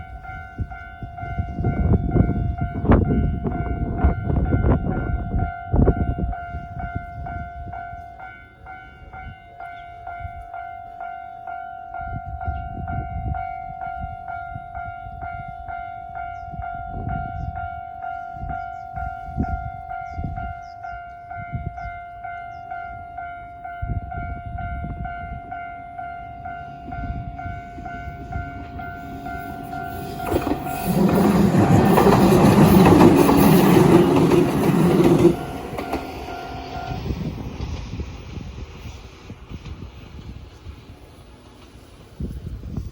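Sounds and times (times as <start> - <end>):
level-crossing alarm bell dings: 0.0 - 37.2
train rumble: 12.0 - 42.9.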